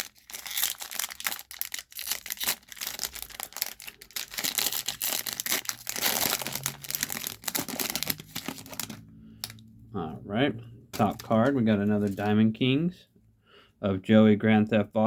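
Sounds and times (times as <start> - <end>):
plastic wrapper crinkling: 0.0 - 9.6, 11.0 - 12.3.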